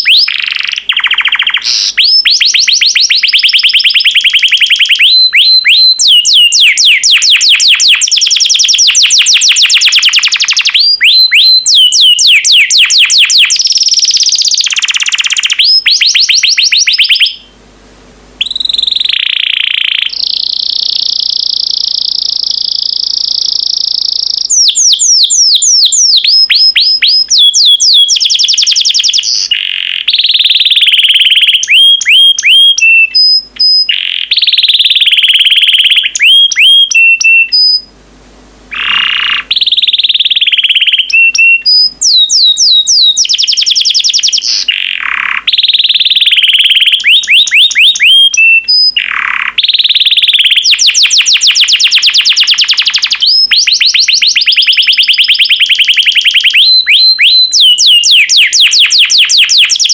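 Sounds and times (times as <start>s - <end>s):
canary singing: 0.0s - 17.5s, 18.4s - 37.9s, 38.7s - 59.9s.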